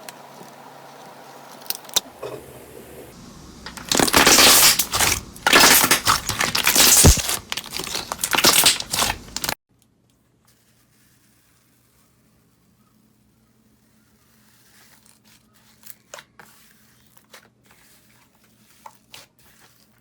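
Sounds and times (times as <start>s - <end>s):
slime squeezed crackling: 3.2s - 9.6s.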